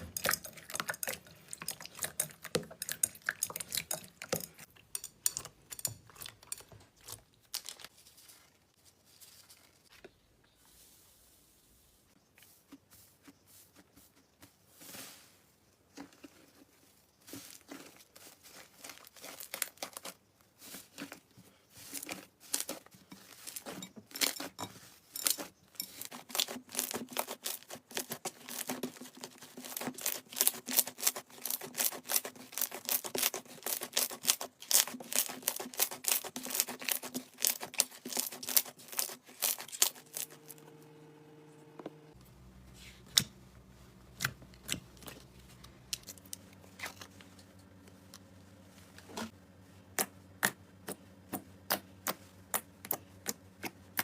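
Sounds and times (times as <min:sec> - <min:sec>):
faint steady hum: 0:39.4 - 0:54.0.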